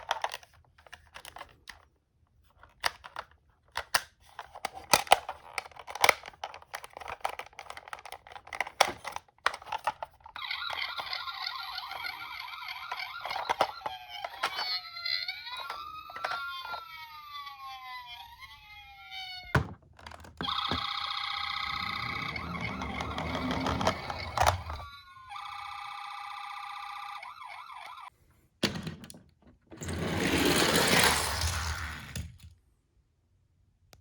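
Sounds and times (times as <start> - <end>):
toy cars clicking and knocking: 0.0 - 17.2, 19.5 - 24.9, 29.8 - 32.5
toy sirens wailing: 10.4 - 19.7, 20.4 - 28.1
electronic siren tone: 20.4 - 28.1.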